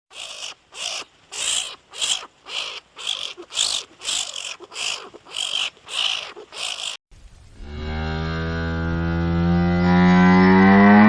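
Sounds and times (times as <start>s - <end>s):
animal giving harsh hissy calls: 0.1s - 7.0s.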